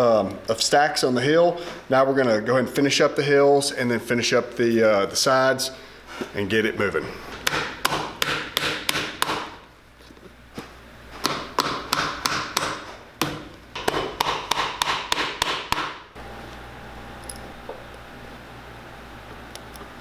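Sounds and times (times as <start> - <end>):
hammer striking shoe heel: 7.4 - 9.6, 11.2 - 16.0.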